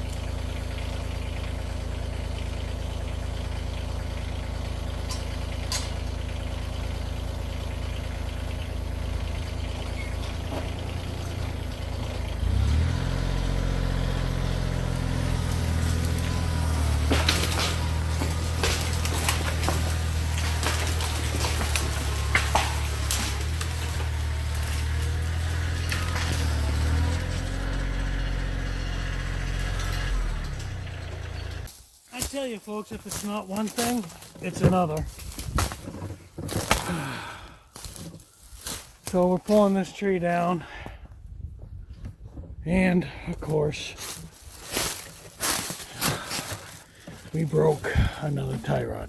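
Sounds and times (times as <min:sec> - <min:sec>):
tractor engine: 0:00.0 - 0:49.0
sharp knocks and cracks: 0:15.0 - 0:27.9, 0:32.2 - 0:37.0.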